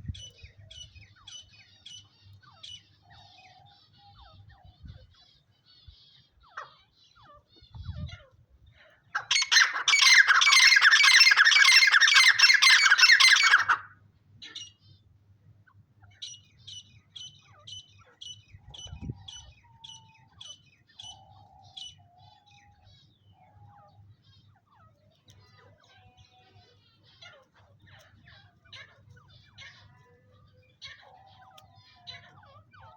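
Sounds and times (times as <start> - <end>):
partridges calling: 9.2 - 14.8, 16.1 - 32.9.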